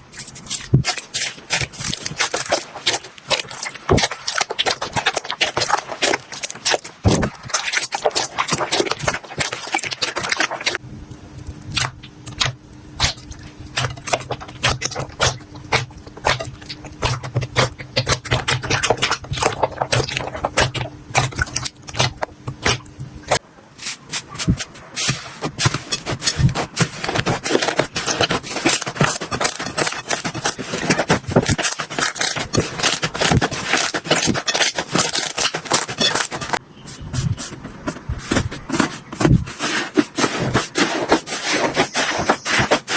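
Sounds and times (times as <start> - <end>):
low hum: 10.8 - 13.8.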